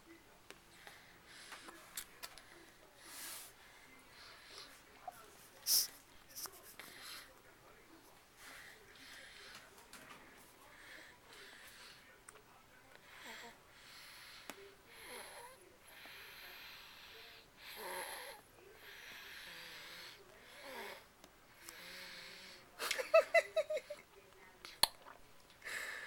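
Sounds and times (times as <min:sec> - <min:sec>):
baby snoring: 0:16.2 - 0:21.1.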